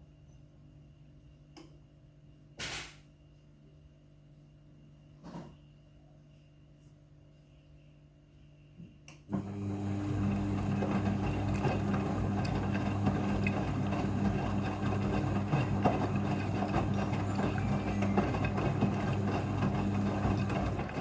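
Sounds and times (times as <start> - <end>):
washing machine hum and rush: 9.3 - 21.0.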